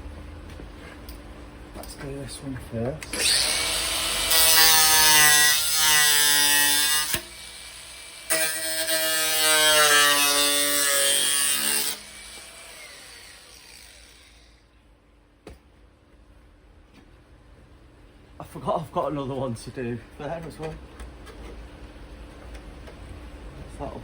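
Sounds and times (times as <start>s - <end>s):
angle grinder cutting steel: 3.0s - 14.6s.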